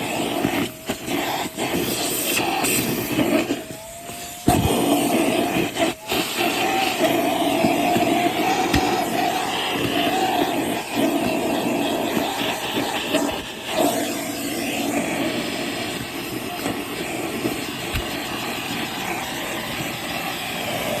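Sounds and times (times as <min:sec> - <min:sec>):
wet dry vacuum running: 0:00.0 - 0:21.0.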